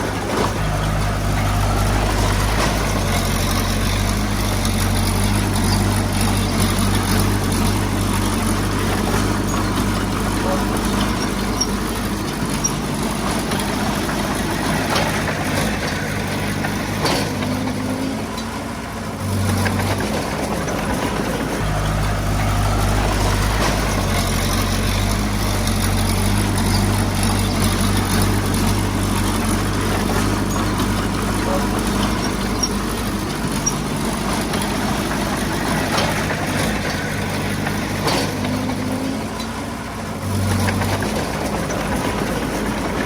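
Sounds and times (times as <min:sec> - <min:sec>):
heavy diesel engine running: 0:00.0 - 0:43.0.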